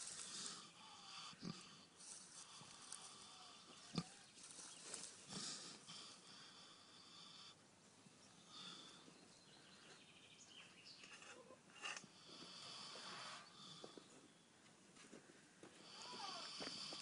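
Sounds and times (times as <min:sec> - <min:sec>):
pig snoring softly: 0:00.0 - 0:04.3, 0:12.1 - 0:14.1, 0:15.8 - 0:17.0.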